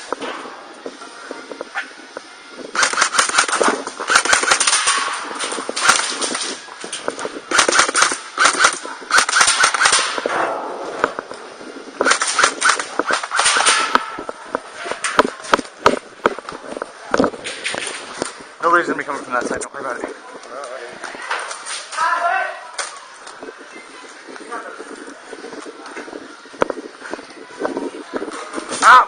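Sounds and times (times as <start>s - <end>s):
airsoft guns firing bursts: 2.8s - 6.5s, 7.5s - 10.2s, 12.0s - 14.0s.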